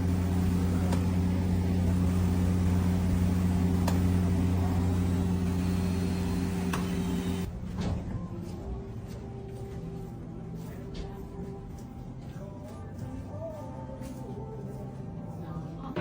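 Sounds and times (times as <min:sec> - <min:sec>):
train engine idling hum: 0:00.0 - 0:07.5.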